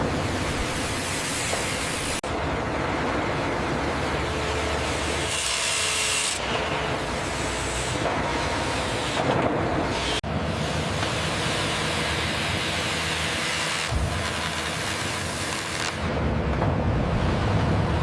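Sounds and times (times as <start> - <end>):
sawmill machinery running: 0.0 - 18.0.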